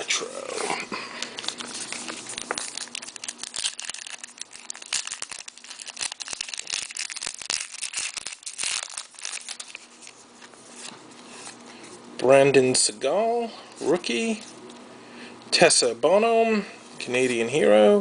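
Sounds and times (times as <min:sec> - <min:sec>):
card pack wrapper crinkling: 0:00.6 - 0:11.6.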